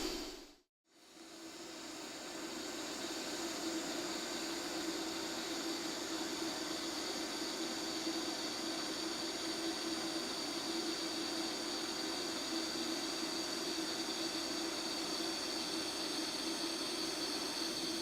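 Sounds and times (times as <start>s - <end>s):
faint high whine: 0.0s - 0.5s.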